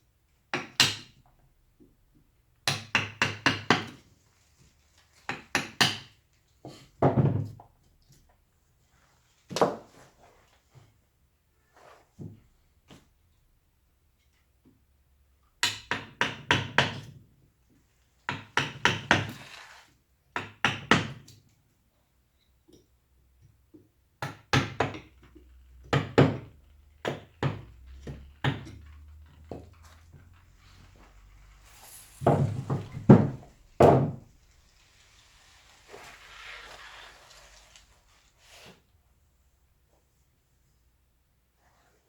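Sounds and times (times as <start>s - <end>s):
mallet striking chisel into wood: 32.2s - 34.2s.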